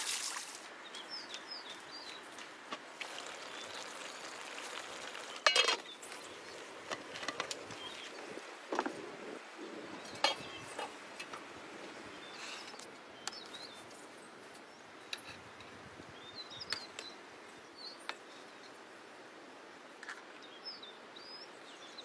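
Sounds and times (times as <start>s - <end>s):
outdoor background noise: 0.0s - 22.0s
small birds chirping: 0.8s - 8.5s.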